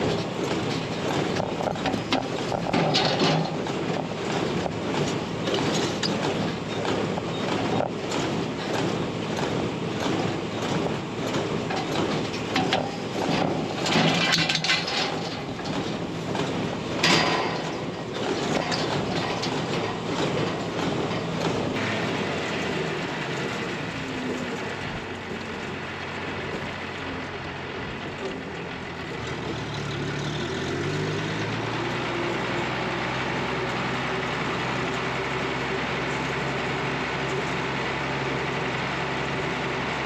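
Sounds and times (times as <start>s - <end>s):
baler mechanism clattering: 0.0s - 21.9s
tractor engine running: 0.0s - 40.0s.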